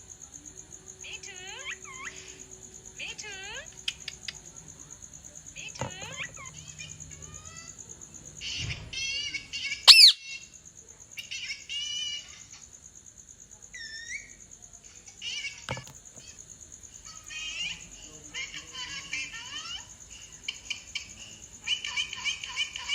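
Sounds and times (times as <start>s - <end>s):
parrot chirping and calling: 9.9s - 10.2s
shrill parrot call: 9.9s - 10.2s.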